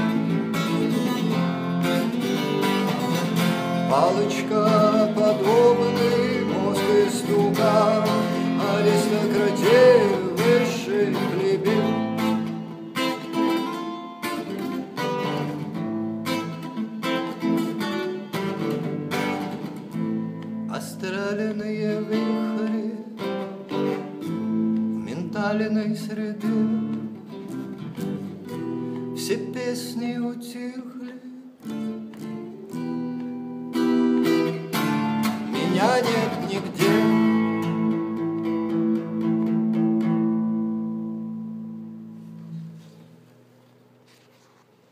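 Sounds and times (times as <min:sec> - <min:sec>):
acoustic guitar strumming: 0:00.0 - 0:44.6
person singing: 0:03.8 - 0:12.8, 0:20.7 - 0:23.8, 0:24.9 - 0:27.4, 0:35.3 - 0:38.5.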